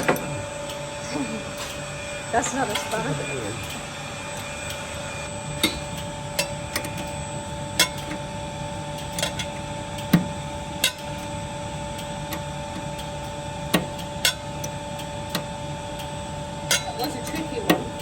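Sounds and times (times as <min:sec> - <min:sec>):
steady hum: 0:00.0 - 0:18.0
hand tools clinking on metal: 0:16.7 - 0:17.8.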